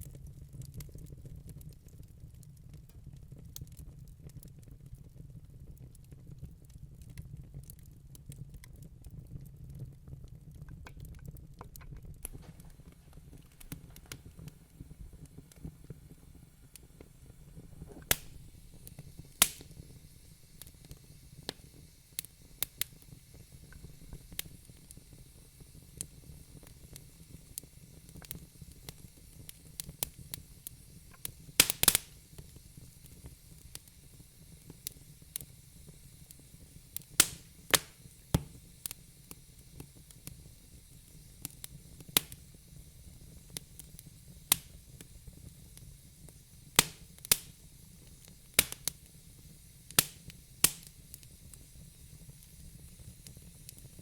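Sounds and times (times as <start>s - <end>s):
wood fire popping: 0.0s - 54.0s
flames rushing: 9.2s - 54.0s.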